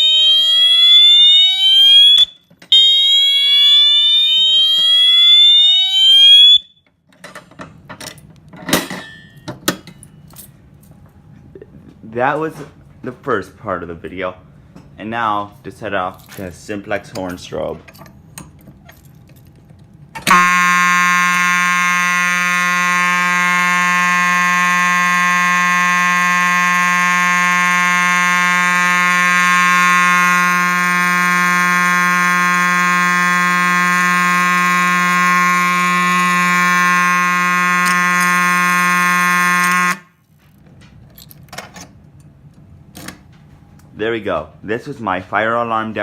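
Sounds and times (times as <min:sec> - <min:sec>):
fire alarm horn tone: 0:00.0 - 0:06.8, 0:20.2 - 0:40.2.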